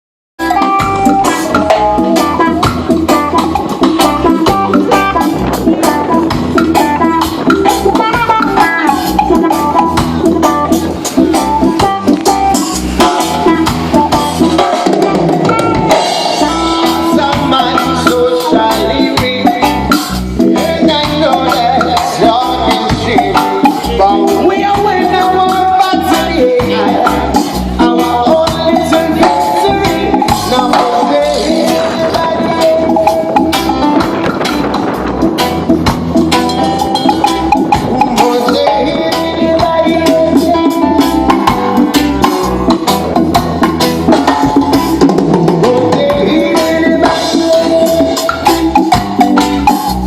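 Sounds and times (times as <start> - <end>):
live band playing upbeat song: 0.4 - 50.0.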